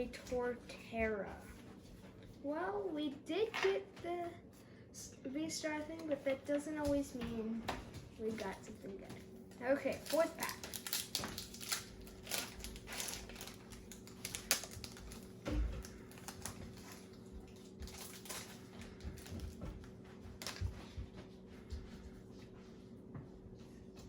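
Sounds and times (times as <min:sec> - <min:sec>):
foil wrapper crinkling: 0:09.5 - 0:19.6.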